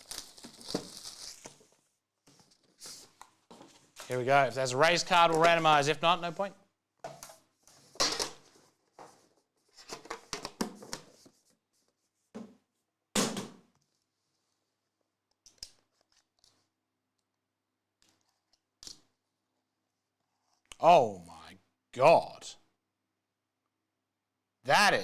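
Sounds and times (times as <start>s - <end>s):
packaging rustling and tearing: 0.0s - 3.2s.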